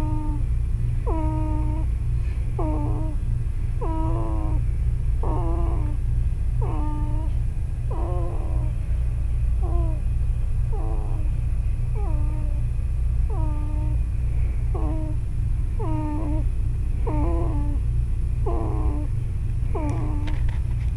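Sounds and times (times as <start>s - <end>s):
baby snoring: 0.0s - 0.4s, 1.0s - 1.9s, 2.6s - 3.2s, 3.8s - 4.6s, 5.2s - 6.0s, 6.6s - 7.3s, 7.9s - 8.8s, 9.6s - 10.0s, 10.7s - 11.3s, 12.0s - 12.6s, 13.3s - 14.0s, 14.8s - 15.2s, 15.8s - 17.8s, 18.4s - 19.1s, 19.7s - 20.4s.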